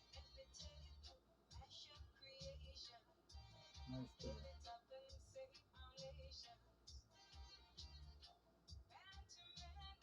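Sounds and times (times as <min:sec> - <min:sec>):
faint music with bass beat: 0:00.0 - 0:10.0
person singing: 0:03.7 - 0:06.5.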